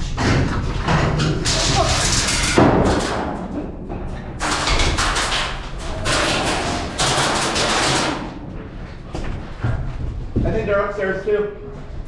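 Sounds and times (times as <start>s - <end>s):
scuffing and clattering: 8.4s - 10.9s.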